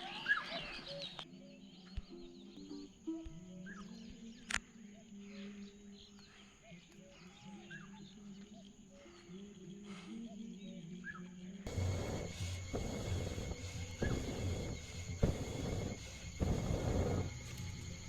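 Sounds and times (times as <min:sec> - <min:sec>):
bird chirps: 0:00.0 - 0:18.0
high insect whine: 0:00.0 - 0:18.0
low steady tones: 0:11.7 - 0:18.0.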